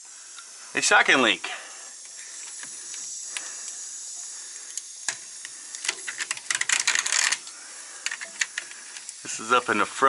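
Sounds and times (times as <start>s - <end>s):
compressed air hissing: 0.0s - 10.0s
faint clicks: 2.0s - 9.2s.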